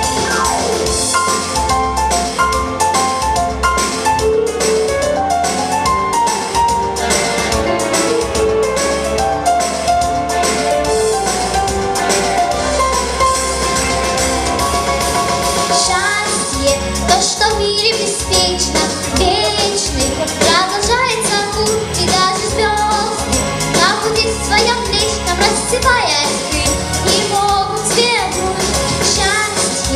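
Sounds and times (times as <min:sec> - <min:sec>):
pop backing track: 0:00.0 - 0:29.9
child singing: 0:15.8 - 0:29.9.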